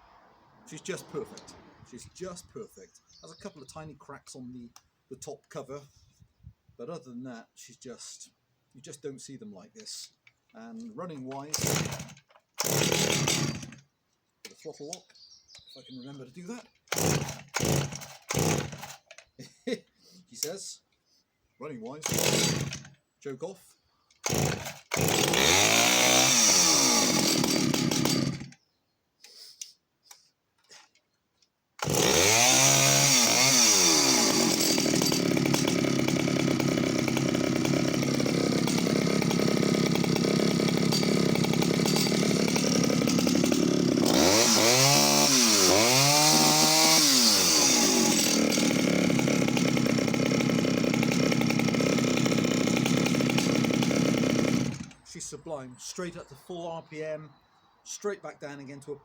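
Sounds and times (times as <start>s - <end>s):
chainsaw revving and idling: 0.6s - 2.5s, 10.7s - 13.8s, 15.8s - 19.8s, 21.9s - 23.0s, 24.2s - 28.6s, 31.8s - 55.1s.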